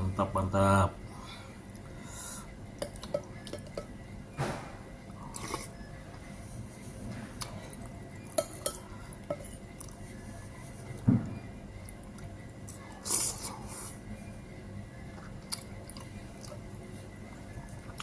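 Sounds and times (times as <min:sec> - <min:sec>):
spoon clinking on a plate: 0:08.3 - 0:09.6.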